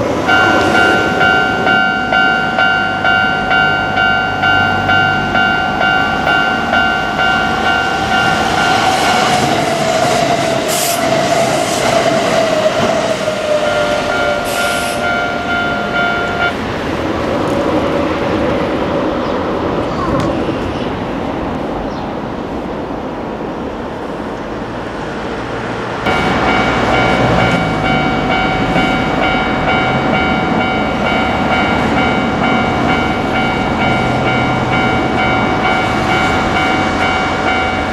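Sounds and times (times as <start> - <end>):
train whine falling in pitch: 0.0 - 16.6, 26.1 - 37.9
train wheels rumbling on rails: 0.0 - 37.9
level crossing bell two-tone: 0.3 - 9.3, 13.6 - 16.5, 26.1 - 37.9.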